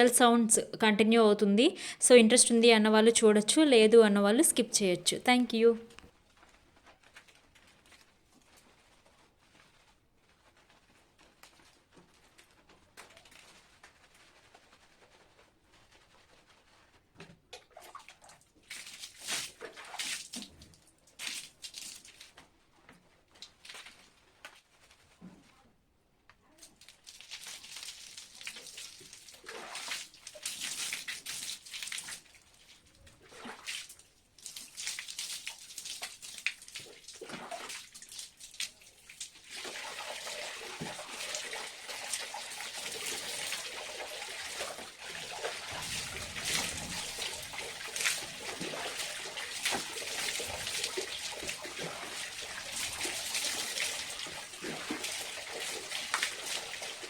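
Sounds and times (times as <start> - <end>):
splashing of wet hair: 6.8 - 22.5, 26.8 - 57.0
water running steadily: 26.8 - 57.0.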